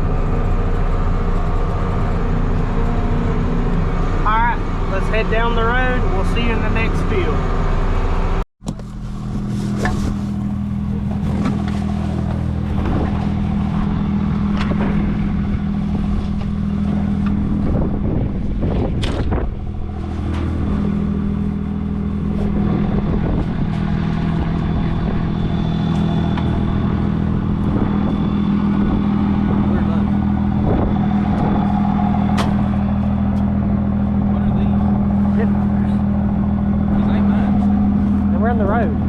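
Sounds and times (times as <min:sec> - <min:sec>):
tractor diesel engine running: 0:00.0 - 0:39.0
rattling and clatter: 0:08.6 - 0:36.2.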